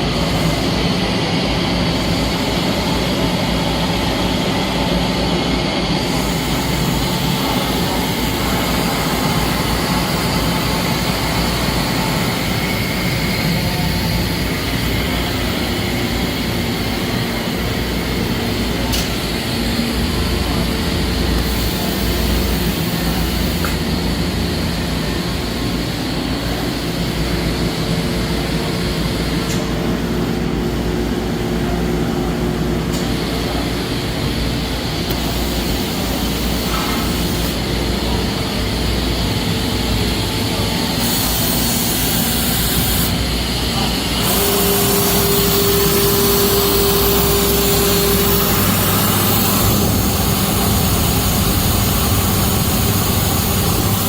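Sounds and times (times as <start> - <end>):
lathe mechanical whir: 0.0 - 54.0.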